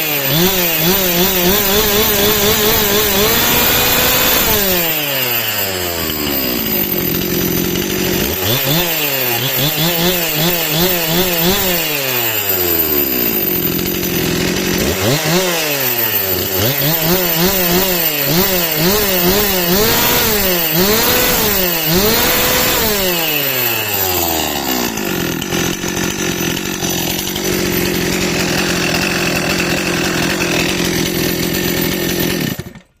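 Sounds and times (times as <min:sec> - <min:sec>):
chainsaw revving and idling: 0:00.0 - 0:33.0.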